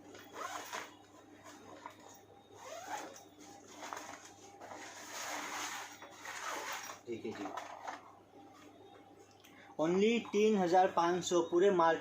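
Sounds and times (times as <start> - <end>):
fabric rustling: 0.2 - 8.8
zipper being pulled: 0.3 - 0.9, 2.6 - 3.2, 4.7 - 7.0.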